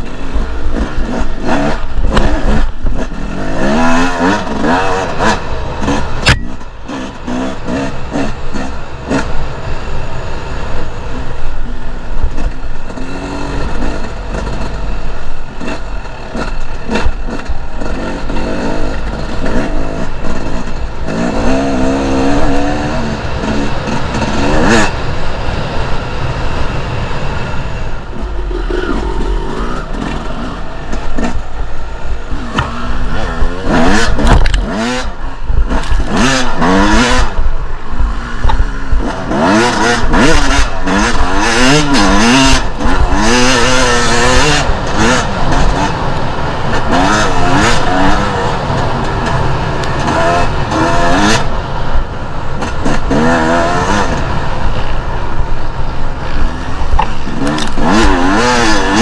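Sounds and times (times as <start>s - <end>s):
dirt bike engine revving: 0.0s - 59.0s
bike knocks and rattles: 29.9s - 37.2s.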